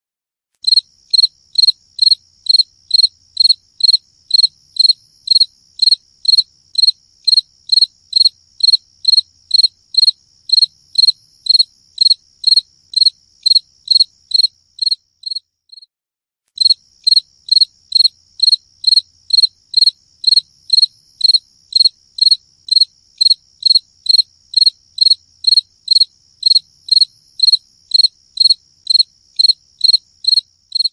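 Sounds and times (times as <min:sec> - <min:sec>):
cricket chirping: 0:00.6 - 0:15.9, 0:16.6 - 0:30.9.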